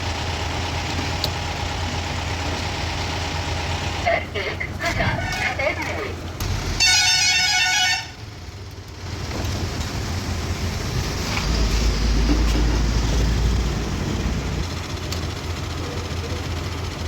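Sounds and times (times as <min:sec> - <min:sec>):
heavy diesel engine rumbling: 0:00.0 - 0:17.0.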